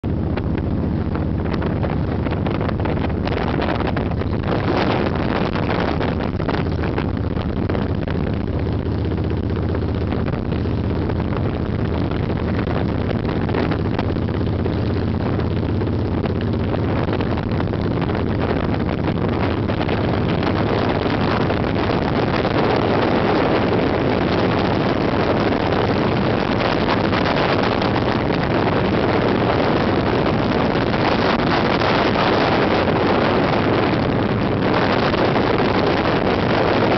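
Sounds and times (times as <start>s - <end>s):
motorcycle engine running: 0.0s - 36.9s
wind rushing over microphone: 0.0s - 36.9s.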